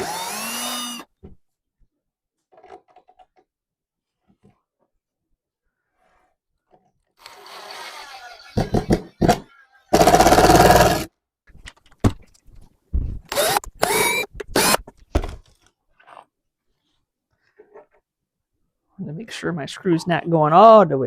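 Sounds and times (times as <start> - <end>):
power drill boring wood: 0.0 - 1.2, 7.2 - 11.1, 13.3 - 14.9
drill and workpiece knocks: 8.6 - 10.9.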